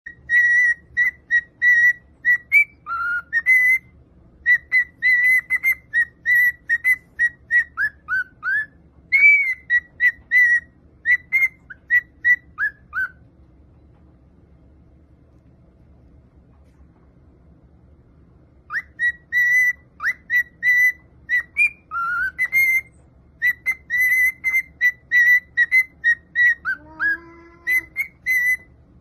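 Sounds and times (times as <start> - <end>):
high whistling: 0.1 - 13.2, 18.6 - 26.8.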